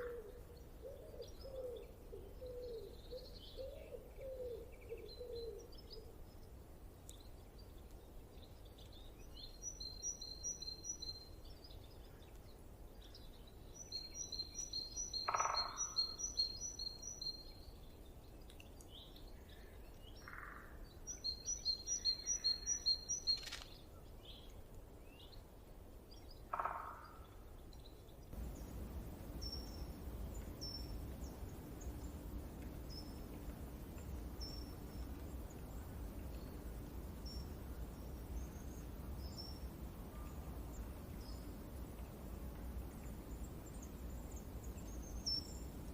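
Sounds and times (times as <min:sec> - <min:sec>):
birds chirping: 0:28.3 - 0:45.9
low steady hum: 0:28.3 - 0:45.9.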